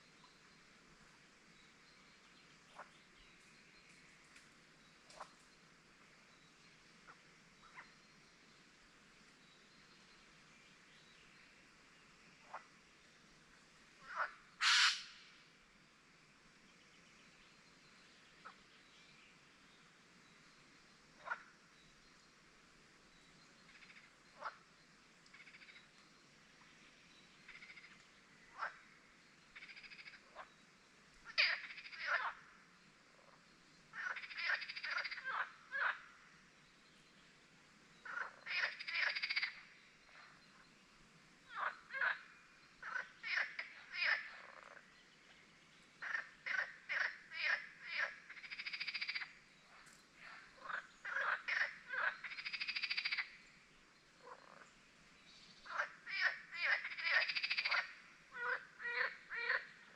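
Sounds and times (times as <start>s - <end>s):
faint background ambience: 0.0s - 59.9s
frogs calling in pulsed notes: 4.9s - 8.4s, 23.2s - 26.2s, 27.4s - 36.4s, 38.0s - 40.7s, 41.4s - 44.9s, 46.0s - 54.6s, 55.5s - 59.9s.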